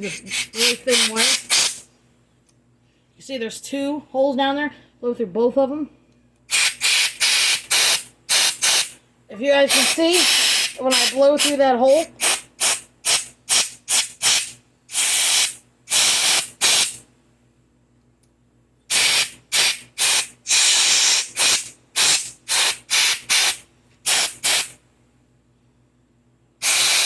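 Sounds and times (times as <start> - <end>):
air blow gun hissing blasts: 0.0 - 1.8, 6.5 - 9.0, 9.7 - 11.6, 12.2 - 17.0, 18.9 - 24.8, 26.6 - 27.0.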